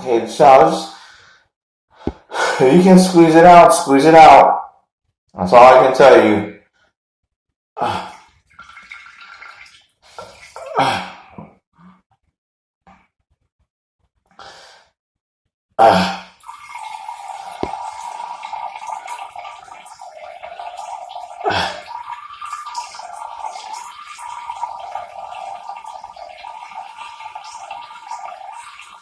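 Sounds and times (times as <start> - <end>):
urine splashing into toilet water: 8.5 - 11.0, 16.4 - 29.0.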